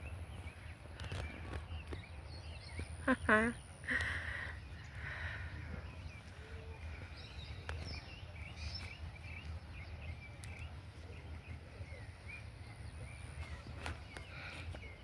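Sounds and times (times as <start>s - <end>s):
small birds chirping: 0.0s - 15.0s
faint clicks: 10.4s - 10.7s.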